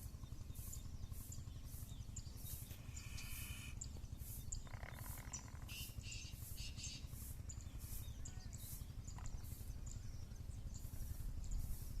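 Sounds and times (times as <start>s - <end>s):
bird chirps: 0.2s - 12.0s
snake hissing in bursts: 2.9s - 4.4s.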